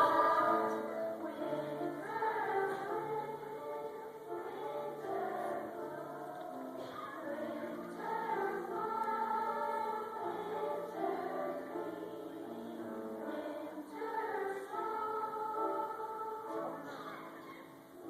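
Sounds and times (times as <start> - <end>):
choir singing held chords: 0.0 - 18.0.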